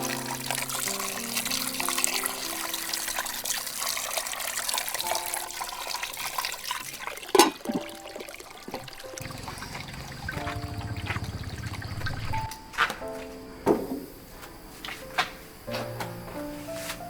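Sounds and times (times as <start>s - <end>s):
water splashing and trickling: 0.0s - 12.6s.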